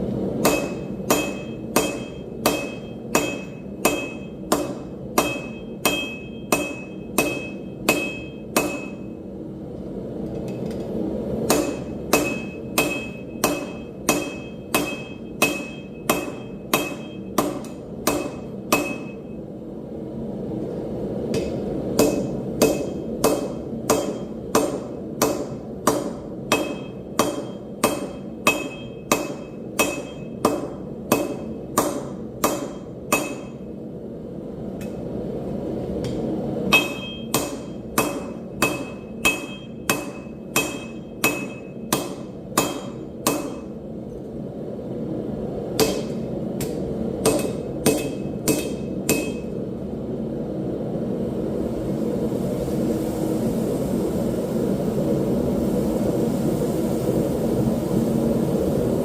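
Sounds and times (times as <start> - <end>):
hammer ringing on anvil: 0.4 - 9.2, 11.5 - 19.4, 21.4 - 33.6, 36.7 - 43.7, 45.8 - 49.5.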